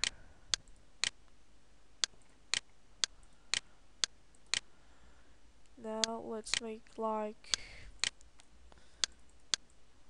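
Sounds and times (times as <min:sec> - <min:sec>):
computer mouse clicking: 0:02.0 - 0:04.7, 0:06.0 - 0:06.7, 0:07.5 - 0:09.8.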